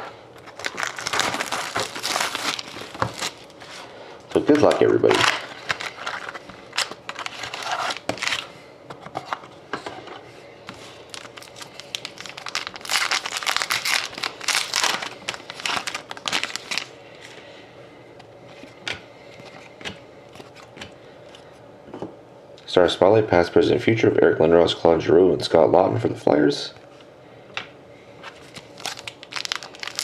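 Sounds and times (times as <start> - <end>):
foil wrappers crinkling and ripping: 0.4 - 8.6, 11.1 - 16.9, 28.3 - 30.0.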